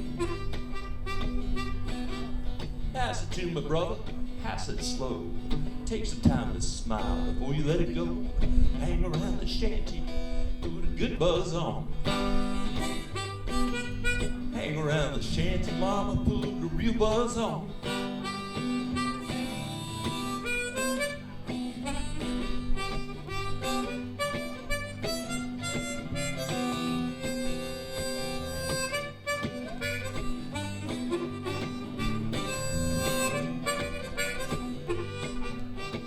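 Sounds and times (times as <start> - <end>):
harmonica solo: 0.0 - 4.4, 12.0 - 16.2, 17.2 - 36.0
band playing blues-rock: 0.0 - 36.0.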